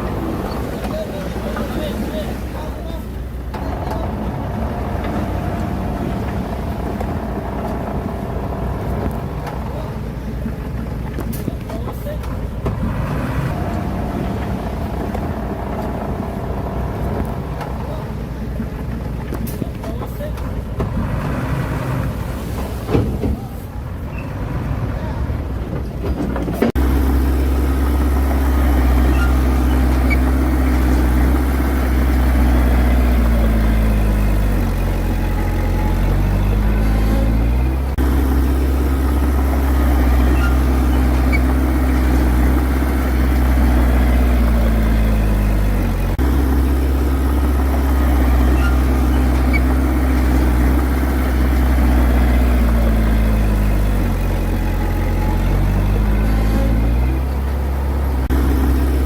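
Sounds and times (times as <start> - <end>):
bulldozer diesel engine lugging: 0.0 - 59.0.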